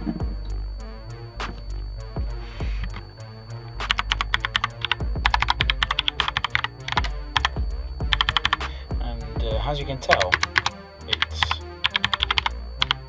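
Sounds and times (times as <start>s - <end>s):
mechanical keyboard typing: 3.9s - 7.5s, 8.1s - 8.7s, 10.1s - 13.0s.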